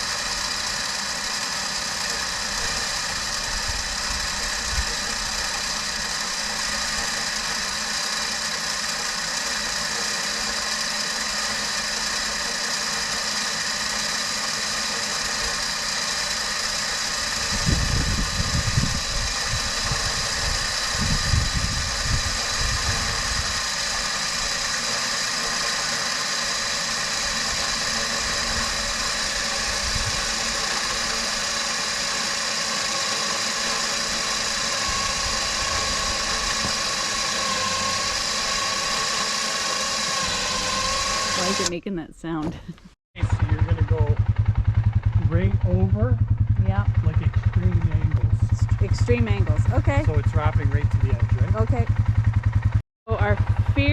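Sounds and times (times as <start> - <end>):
electric winch running: 0.0 - 41.8, 42.6 - 53.9
quad engine idling: 0.0 - 53.9
low rumbles: 17.2 - 23.6, 41.3 - 53.9.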